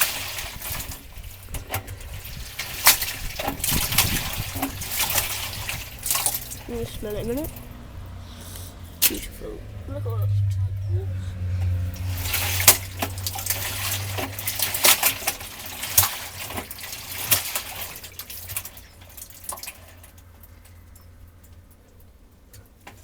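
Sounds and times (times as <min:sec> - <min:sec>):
water sloshing in washing machine: 0:00.0 - 0:23.0
low hum: 0:03.7 - 0:14.5.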